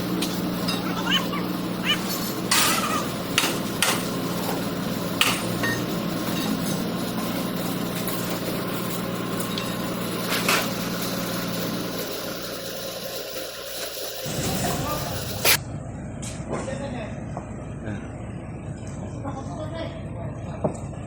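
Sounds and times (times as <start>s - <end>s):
engine humming: 0.0s - 21.0s
sharp knocks: 2.2s - 5.9s.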